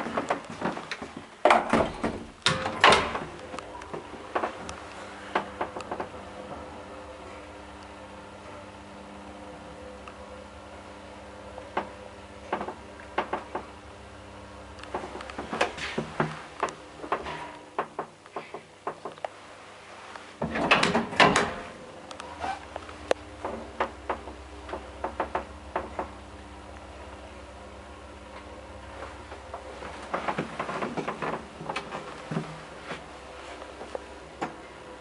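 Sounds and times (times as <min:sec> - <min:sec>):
elevator machinery clicking: 0:00.0 - 0:08.7, 0:11.5 - 0:13.9, 0:14.6 - 0:19.4, 0:20.4 - 0:27.2, 0:28.0 - 0:32.7
steady electrical hum: 0:00.0 - 0:35.0.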